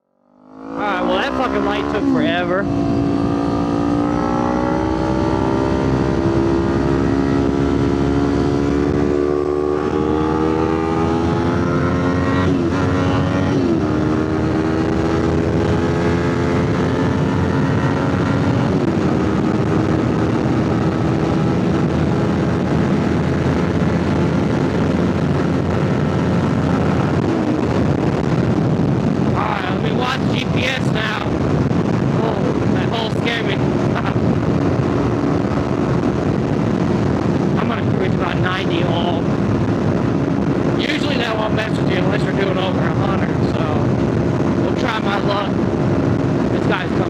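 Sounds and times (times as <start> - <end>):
motorcycle engine accelerating: 0.2 - 47.0
wind rush on microphone: 0.8 - 47.0.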